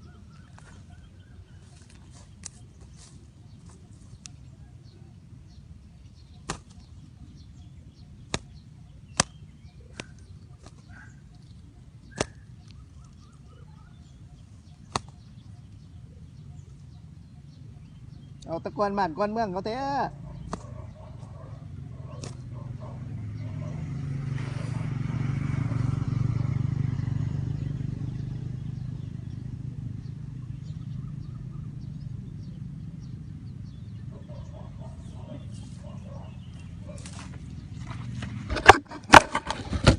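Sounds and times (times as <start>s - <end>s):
vehicle engine passing: 20.0s - 39.7s
low steady rumble: 27.2s - 38.5s.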